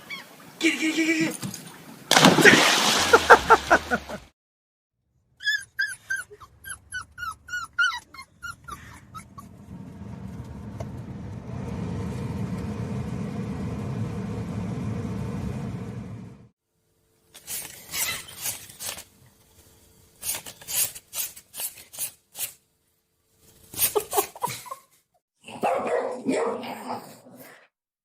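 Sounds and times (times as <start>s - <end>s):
dog yipping and whimpering: 0.0s - 0.4s, 5.4s - 9.5s, 17.9s - 18.5s
low rumbling noise: 8.9s - 16.5s.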